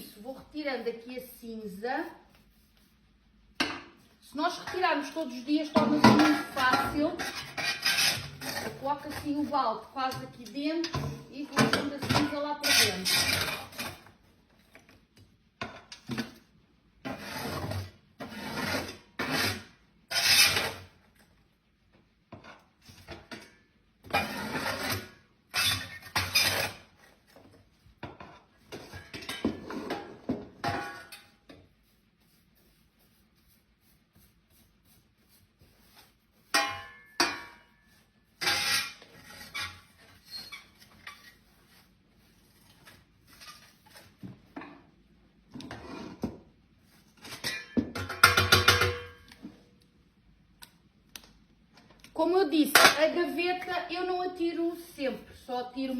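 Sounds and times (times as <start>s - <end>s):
metal shovel scraping ash: 4.6s - 9.5s, 11.2s - 14.0s, 17.0s - 20.9s, 24.1s - 27.2s, 36.5s - 41.9s.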